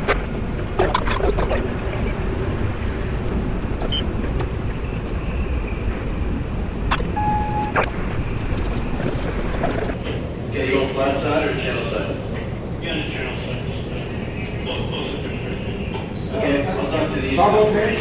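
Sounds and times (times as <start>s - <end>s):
ship engine low rumble: 0.0s - 18.0s
short beep: 7.0s - 7.8s.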